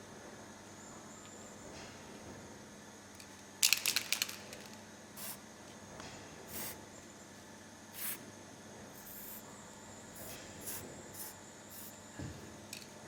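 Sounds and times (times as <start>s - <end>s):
rattle of clicks: 3.2s - 4.8s
aerosol spray bursts: 5.2s - 5.4s, 6.5s - 6.8s, 8.0s - 8.2s, 10.2s - 11.9s.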